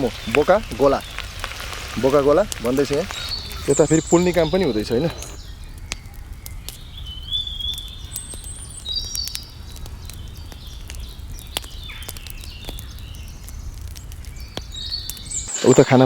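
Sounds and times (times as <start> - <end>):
birds chirping: 0.0 - 16.0
fire crackling: 0.0 - 16.0.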